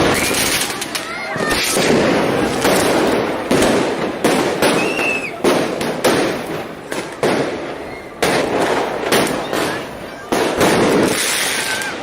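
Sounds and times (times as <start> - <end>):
fireworks bangs: 0.0 - 12.0
firework whistle: 4.6 - 6.4, 10.6 - 12.0.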